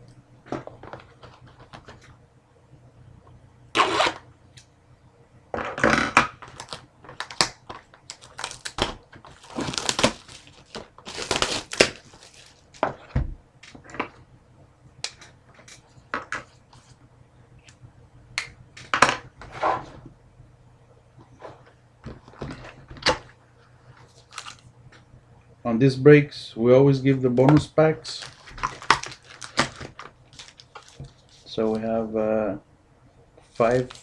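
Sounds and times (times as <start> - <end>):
plastic wrapping crinkling: 6.4 - 13.8, 23.8 - 24.7, 28.0 - 31.9, 33.4 - 34.0.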